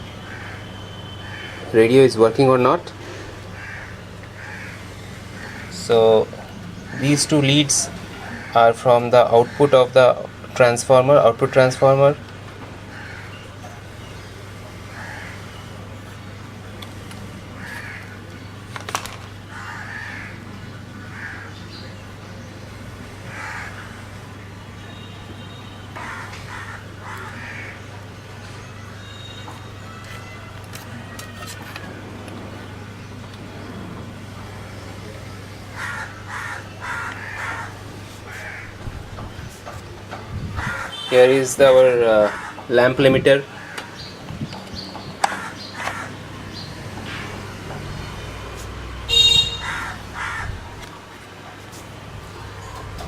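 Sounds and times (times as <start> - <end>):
crows cawing: 0.2 - 1.7, 3.0 - 10.3, 12.9 - 13.6, 14.9 - 15.7, 17.6 - 18.4, 19.0 - 21.8, 23.2 - 24.0, 24.9 - 28.0, 35.7 - 39.4, 40.6 - 44.2, 45.2 - 47.4, 49.1 - 50.9
bird calling harshly: 35.7 - 39.5, 40.4 - 41.5, 42.2 - 42.7, 45.2 - 46.8, 49.1 - 50.6.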